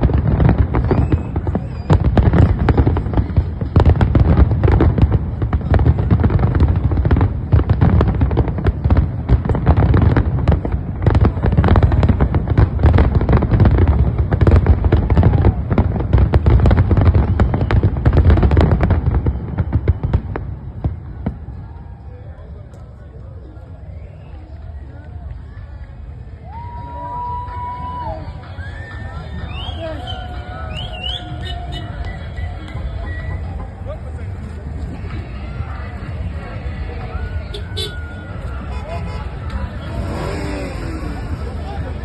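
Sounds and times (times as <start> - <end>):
fireworks bangs: 0.0 - 22.0.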